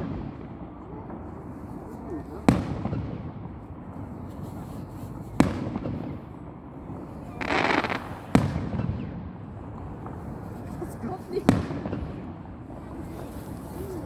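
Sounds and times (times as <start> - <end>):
firework hiss: 7.0 - 8.5
firework shells bursting: 7.4 - 8.7.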